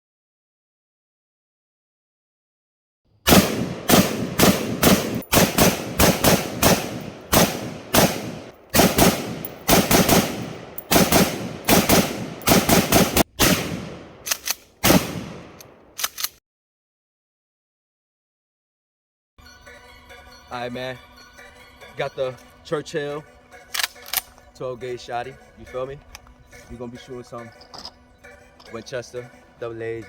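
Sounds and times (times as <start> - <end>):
gunshots: 3.3 - 16.1.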